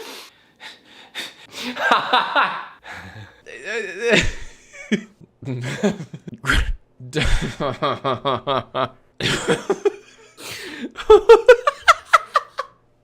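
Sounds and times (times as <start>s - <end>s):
man laughing: 1.6s - 12.7s
man making strange vocal noises: 3.0s - 4.6s, 5.3s - 7.6s.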